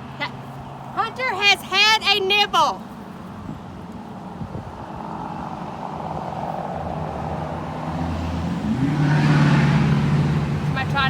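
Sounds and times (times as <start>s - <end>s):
passing vehicle engine revving: 4.5s - 11.0s.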